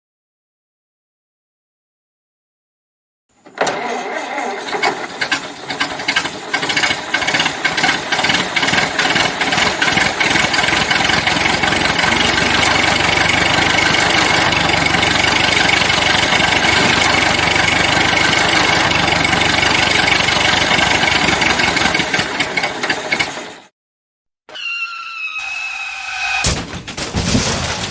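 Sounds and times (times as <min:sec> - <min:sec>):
car engine starting and running: 0:03.4 - 0:23.7.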